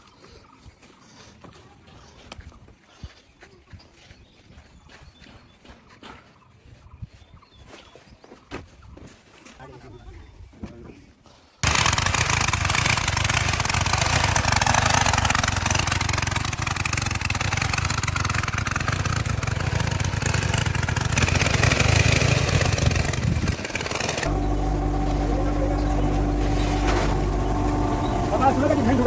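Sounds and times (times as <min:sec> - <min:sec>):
factory machinery running: 0:11.6 - 0:29.0
machine humming: 0:11.6 - 0:29.0.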